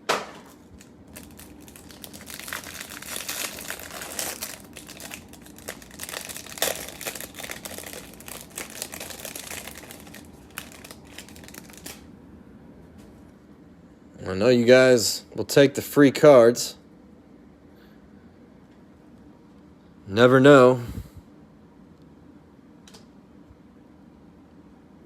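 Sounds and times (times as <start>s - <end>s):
card packaging crinkling: 0.3s - 12.1s.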